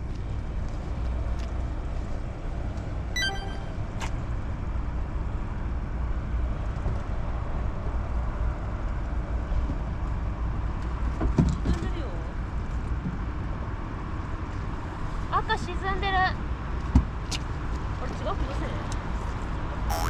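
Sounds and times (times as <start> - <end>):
high electronic beep: 3.2 - 3.8.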